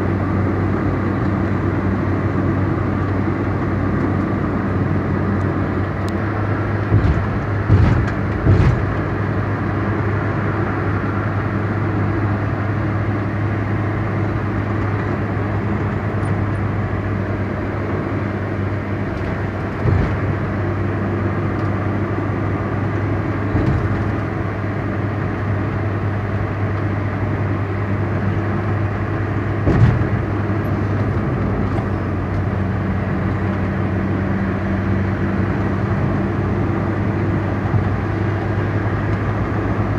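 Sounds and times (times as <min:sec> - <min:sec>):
car engine and road noise: 0:00.0 - 0:39.9
short thumps: 0:06.8 - 0:09.1, 0:19.0 - 0:20.6, 0:23.5 - 0:24.4, 0:29.6 - 0:31.9.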